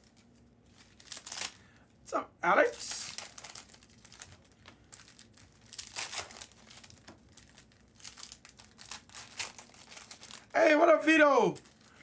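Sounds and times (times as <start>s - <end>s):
card pack wrappers crinkling: 0.7s - 1.6s, 2.7s - 10.8s, 11.5s - 12.0s.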